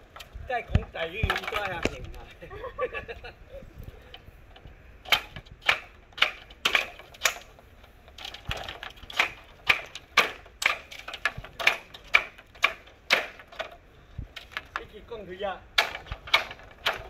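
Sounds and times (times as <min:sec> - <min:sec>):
bamboo cracking as it splits: 0:05.0 - 0:13.8, 0:15.8 - 0:17.0.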